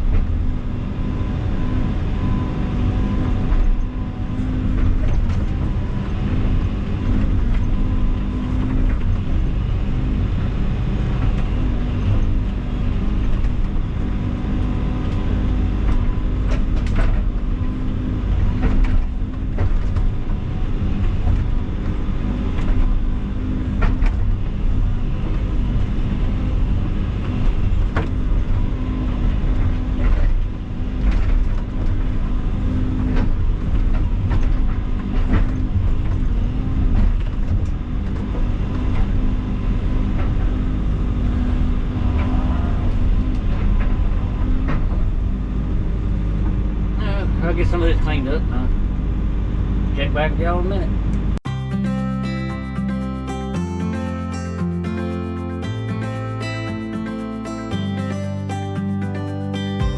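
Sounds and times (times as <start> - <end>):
diesel engine running under load: 0.0 - 47.9.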